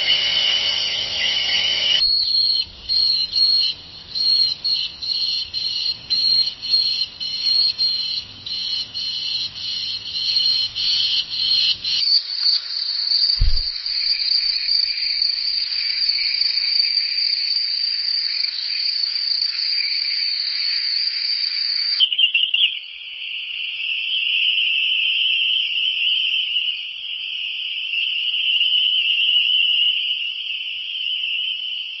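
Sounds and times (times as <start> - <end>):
crickets chirring: 0.0 - 22.0
brief low thump: 13.4 - 13.8.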